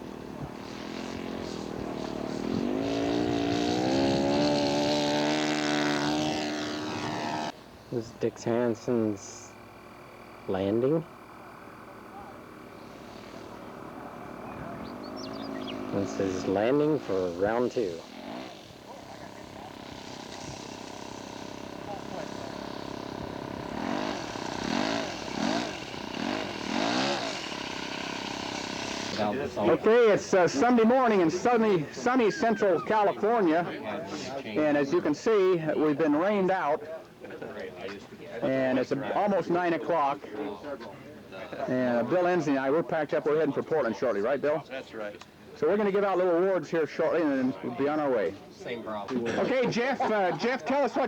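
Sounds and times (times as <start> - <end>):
model airplane engine running: 0.0 - 36.7.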